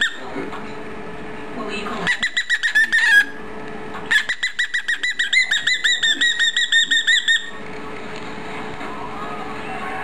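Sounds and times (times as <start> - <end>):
cockatiel chirping: 2.0 - 3.4, 4.0 - 7.6.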